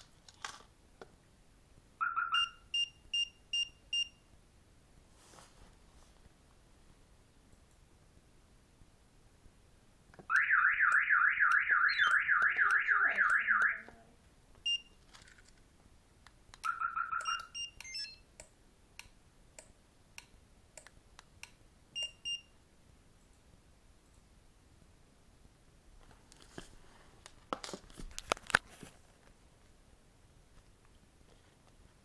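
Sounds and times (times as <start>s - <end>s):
car alarm siren warbling: 2.0s - 2.4s, 10.3s - 14.0s, 16.7s - 17.4s
short chirps and beeps: 2.0s - 4.1s, 10.3s - 14.0s, 16.7s - 18.2s
sharp clicks: 10.2s - 14.0s, 16.2s - 22.1s.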